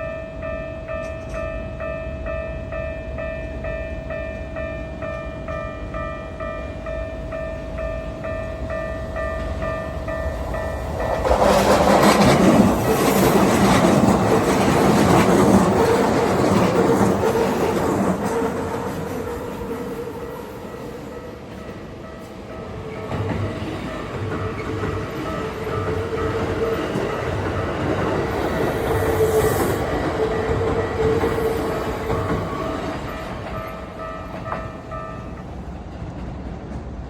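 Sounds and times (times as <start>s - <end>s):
level-crossing bell dinging: 0.0s - 11.3s, 19.2s - 35.5s
train passing close by: 0.0s - 37.0s.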